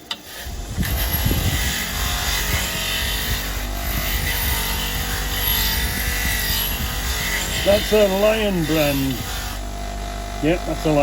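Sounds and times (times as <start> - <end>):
electric wire brush wheel scrubbing: 0.0 - 11.0.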